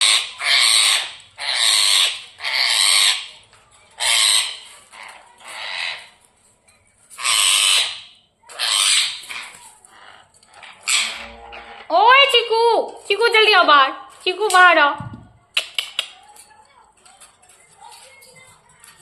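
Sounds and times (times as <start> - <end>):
parakeet screeching: 0.0 - 3.4, 4.0 - 6.2, 7.1 - 12.2.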